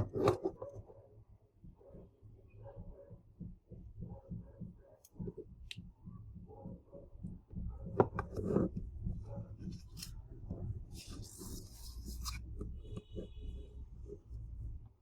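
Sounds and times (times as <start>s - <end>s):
rubbing scrape: 8.2s - 14.6s.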